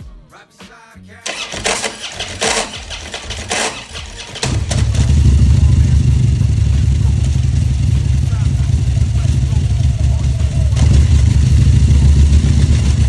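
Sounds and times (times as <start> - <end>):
motorcycle engine idling: 1.3 - 13.0
motorcycle starter cranking: 1.3 - 13.0.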